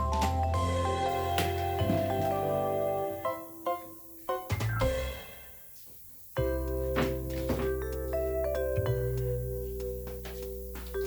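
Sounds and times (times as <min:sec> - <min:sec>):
sustained chords with bell-like notes: 0:00.0 - 0:03.2.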